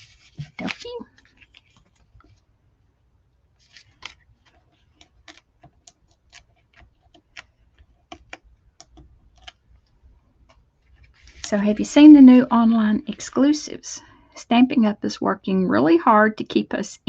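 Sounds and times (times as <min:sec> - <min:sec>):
fingers clicking and tapping paper: 0:03.8 - 0:10.6.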